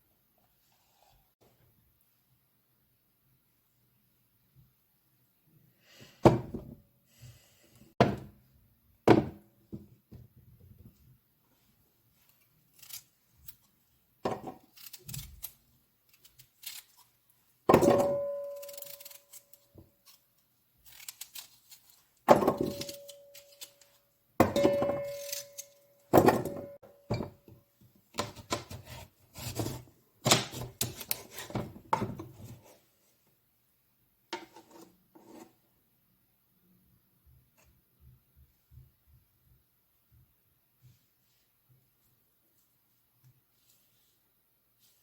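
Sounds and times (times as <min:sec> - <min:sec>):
metal cookware ringing: 0:24.4 - 0:26.9.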